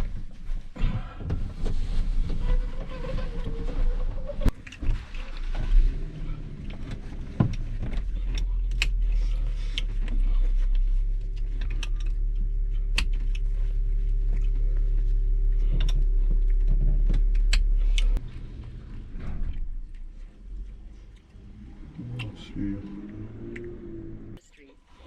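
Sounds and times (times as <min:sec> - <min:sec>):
car engine idling: 0:04.6 - 0:24.4.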